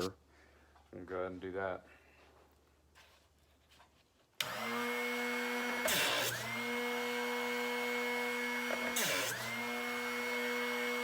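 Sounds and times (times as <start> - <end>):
drill bit grinding: 4.4 - 11.0
electric motor whining: 4.4 - 11.0.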